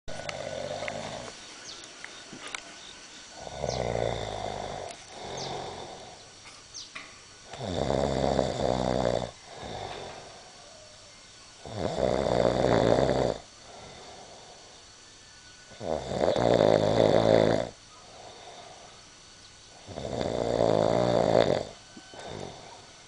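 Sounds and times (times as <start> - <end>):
loud buzzing snores: 0.1 - 1.4, 3.3 - 6.3, 7.4 - 10.6, 11.6 - 14.8, 15.7 - 19.0, 19.7 - 23.0.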